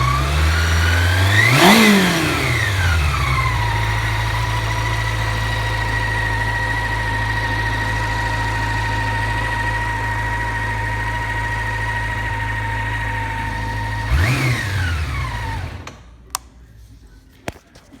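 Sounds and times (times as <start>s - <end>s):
motorcycle engine idling: 0.0s - 16.3s.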